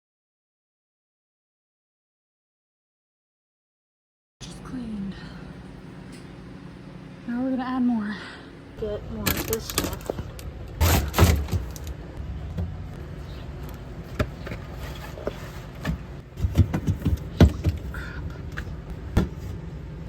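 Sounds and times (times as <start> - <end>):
items knocking in a refrigerator: 9.2 - 11.9, 15.8 - 18.0, 19.1 - 19.5.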